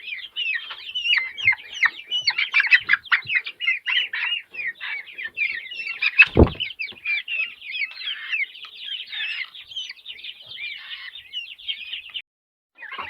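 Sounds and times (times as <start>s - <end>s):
chickens clucking: 0.0s - 12.2s, 12.8s - 13.0s
low thump: 6.3s - 6.7s.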